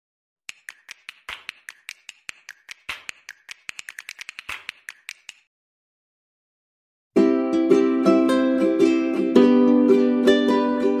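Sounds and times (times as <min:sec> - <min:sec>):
rapid sharp clicks: 0:00.5 - 0:05.5.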